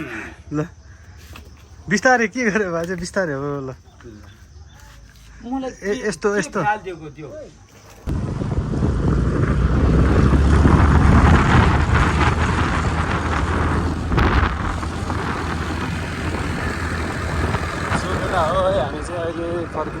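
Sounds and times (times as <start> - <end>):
wind and road noise: 1.0 - 20.0
small scooter engine running: 8.1 - 20.0.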